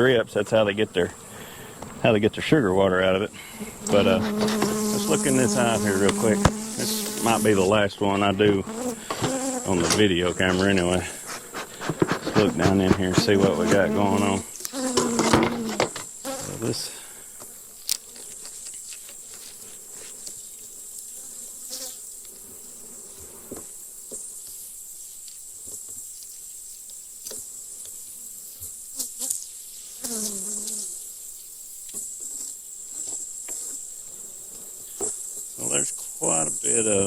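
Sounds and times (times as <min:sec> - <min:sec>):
high insect whine: 0:00.0 - 0:37.0
bees buzzing: 0:00.1 - 0:16.9.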